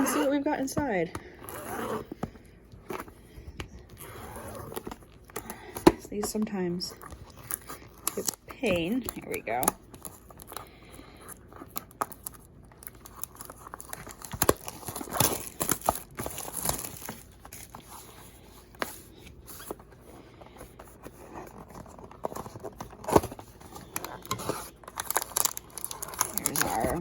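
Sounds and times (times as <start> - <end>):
plastic wrap crinkling: 3.7 - 27.0
cardboard tearing: 3.8 - 6.0, 7.0 - 19.8, 21.0 - 27.0.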